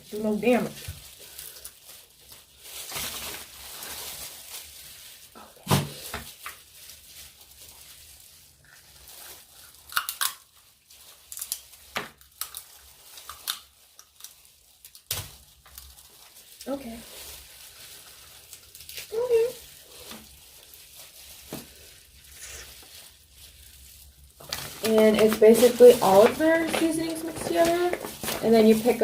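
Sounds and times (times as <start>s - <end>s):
crab shells cracking: 9.8s - 10.5s, 11.3s - 15.9s.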